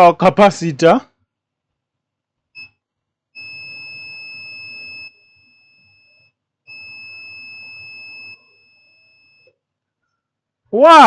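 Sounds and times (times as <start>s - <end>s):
multimeter continuity beeps: 2.6s - 9.6s.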